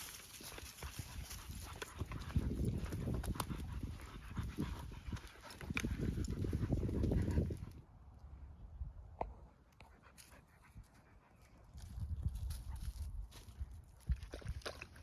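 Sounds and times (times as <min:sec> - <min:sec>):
footsteps on dirt trail: 0:00.0 - 0:07.6
dogs panting: 0:00.0 - 0:07.8.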